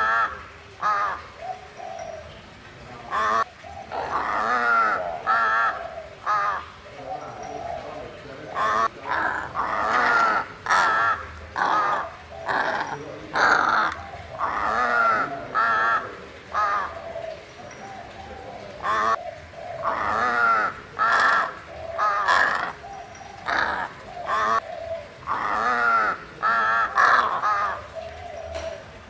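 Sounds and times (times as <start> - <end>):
crow cawing: 0.0 - 1.3, 3.1 - 6.8, 8.5 - 17.2, 18.8 - 19.2, 19.8 - 28.8.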